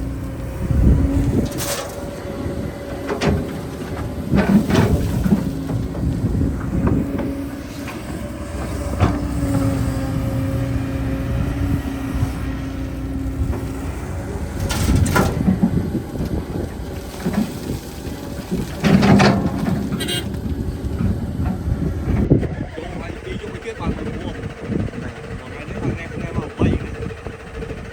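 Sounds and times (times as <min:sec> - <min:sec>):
heavy machinery diesel hum: 0:00.0 - 0:27.9
loud knocks and clatter: 0:02.9 - 0:09.6, 0:14.5 - 0:16.5, 0:17.1 - 0:22.3.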